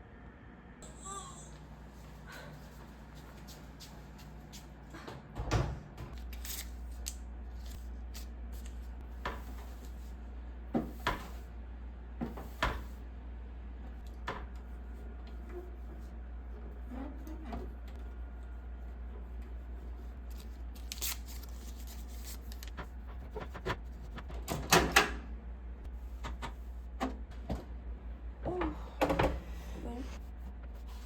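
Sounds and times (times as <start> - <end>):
steady low hum: 0.0 - 31.0.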